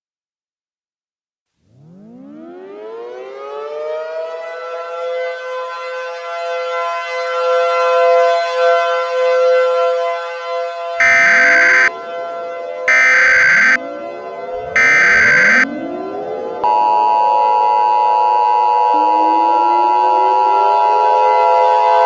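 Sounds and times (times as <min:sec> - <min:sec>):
civil defense siren wailing: 0:01.7 - 0:22.0
emergency alert data tones: 0:11.0 - 0:11.9, 0:12.9 - 0:13.8, 0:14.7 - 0:15.8.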